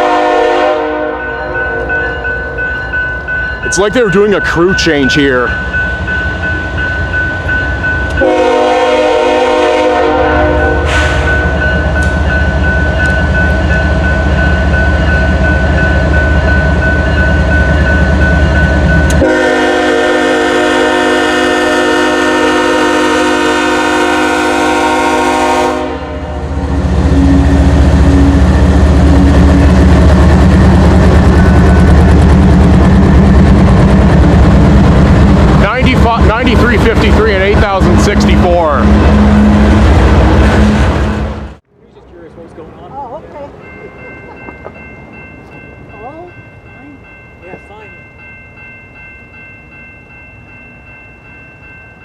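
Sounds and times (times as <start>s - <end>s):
locomotive air horn: 0.0s - 1.8s, 8.2s - 11.4s, 19.2s - 29.2s
train rumbling: 0.0s - 52.0s.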